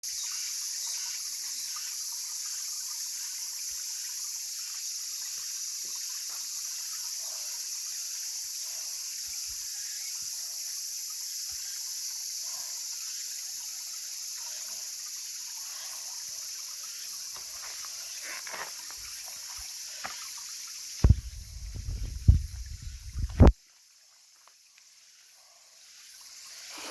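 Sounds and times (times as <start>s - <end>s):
high-pitched hiss: 0.0s - 26.9s
stream trickling: 0.0s - 26.9s
wind buffeting microphone: 21.0s - 23.5s.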